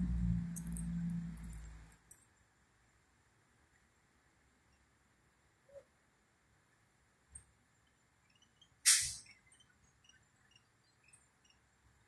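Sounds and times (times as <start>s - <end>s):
faint background hum: 0.0s - 12.0s.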